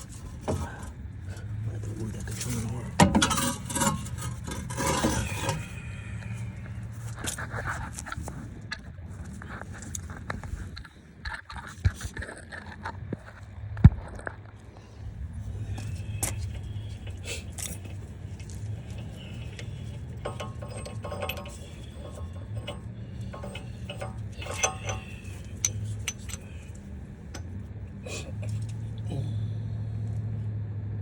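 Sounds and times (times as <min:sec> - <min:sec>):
steady low hum: 0:00.0 - 0:31.0
metal tools clinking on metal: 0:02.2 - 0:06.6, 0:15.6 - 0:27.5.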